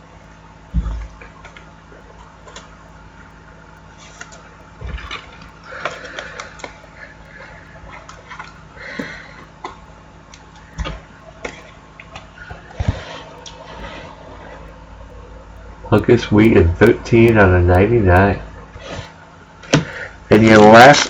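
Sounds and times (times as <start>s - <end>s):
soft low thumps: 0.7s - 1.4s.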